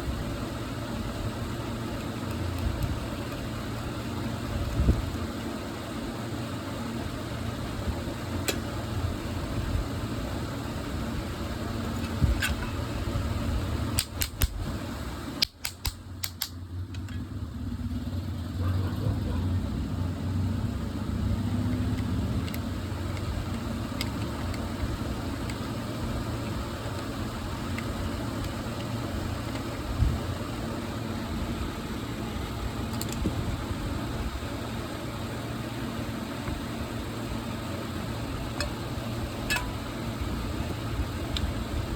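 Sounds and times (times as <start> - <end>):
exhaust fan motor humming: 0.0 - 41.9
sharp clicks: 14.0 - 14.6, 15.4 - 17.1.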